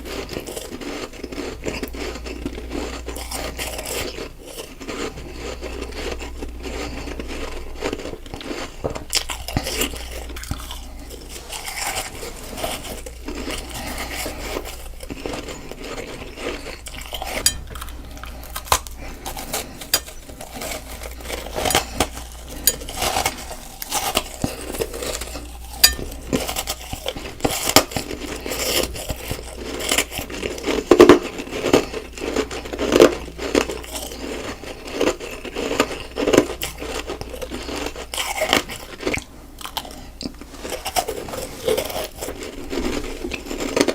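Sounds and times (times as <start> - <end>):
chewing crunchy snowballs: 0.0 - 43.9.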